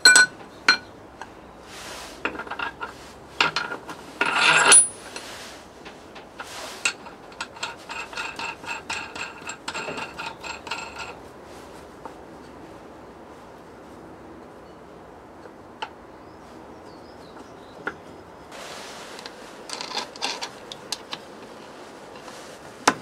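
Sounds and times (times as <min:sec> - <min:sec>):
light ringing metal clinks: 0:00.0 - 0:00.9
metal tools clinking: 0:00.0 - 0:00.9, 0:02.4 - 0:05.3
metal scrape: 0:01.7 - 0:05.6.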